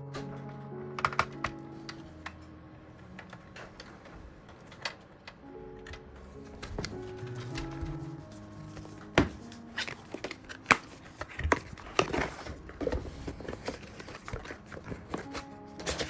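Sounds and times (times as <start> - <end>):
plastic packaging crinkling: 6.4 - 16.0.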